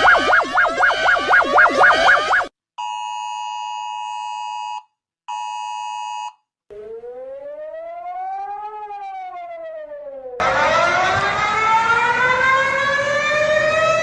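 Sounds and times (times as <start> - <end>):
two-tone alert tone: 0.0 - 2.5
wailing siren: 0.0 - 2.5, 6.7 - 14.0.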